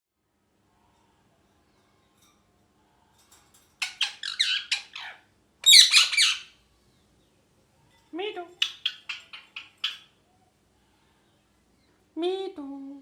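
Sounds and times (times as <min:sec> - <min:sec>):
parrot squawking: 0:03.8 - 0:06.6, 0:08.6 - 0:10.1.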